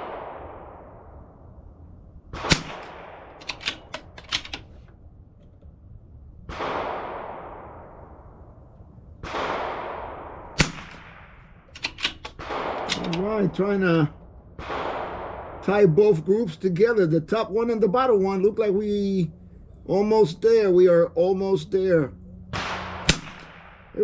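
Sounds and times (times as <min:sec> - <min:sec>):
rifle shots: 0:02.3 - 0:05.0, 0:06.5 - 0:08.1, 0:09.2 - 0:16.1, 0:22.5 - 0:24.0
metallic clicks of rifle bolt: 0:02.5 - 0:05.7, 0:10.6 - 0:11.1, 0:11.7 - 0:13.5, 0:23.1 - 0:23.6.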